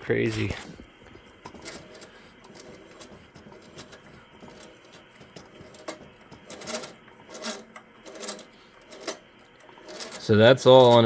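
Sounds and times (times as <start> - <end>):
metal parts clicking and tapping: 1.4 - 11.0.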